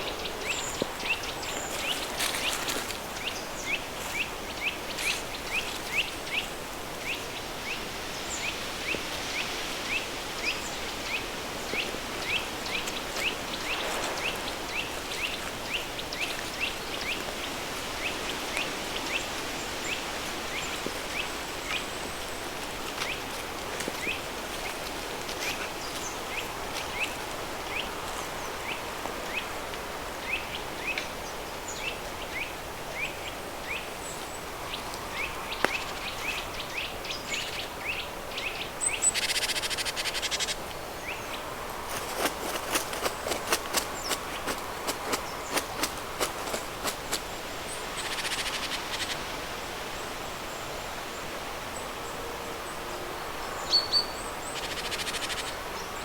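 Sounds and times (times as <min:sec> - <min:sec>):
pink noise: 0:08.4 - 0:21.5.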